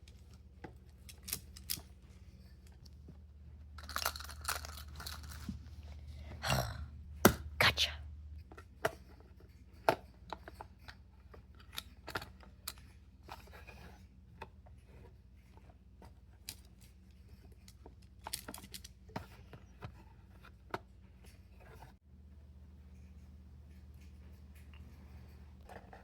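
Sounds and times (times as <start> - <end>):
low steady hum: 0.0 - 26.0
small toys clicking and tapping: 16.4 - 20.0.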